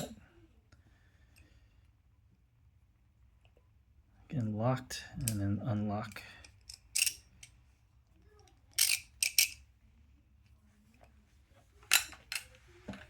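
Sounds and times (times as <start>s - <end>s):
ratchet metal clicks: 8.8s - 9.6s.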